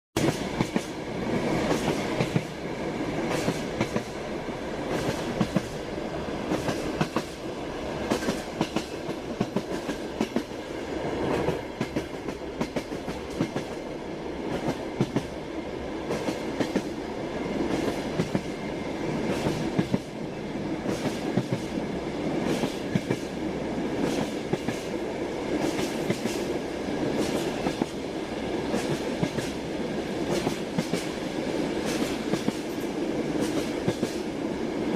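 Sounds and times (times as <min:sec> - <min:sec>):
train wheels clacking over rail joints: 0:00.2 - 0:01.0, 0:01.6 - 0:02.5, 0:03.3 - 0:04.2, 0:04.9 - 0:05.8, 0:06.5 - 0:07.4, 0:08.0 - 0:10.6, 0:11.3 - 0:13.8, 0:14.5 - 0:15.4, 0:17.7 - 0:18.5, 0:19.2 - 0:20.1, 0:20.8 - 0:21.7, 0:22.4 - 0:23.3, 0:25.6 - 0:26.5, 0:27.1 - 0:28.0, 0:28.7 - 0:29.6, 0:30.3 - 0:31.2, 0:31.8 - 0:34.2
train running rumble: 0:00.2 - 0:34.9.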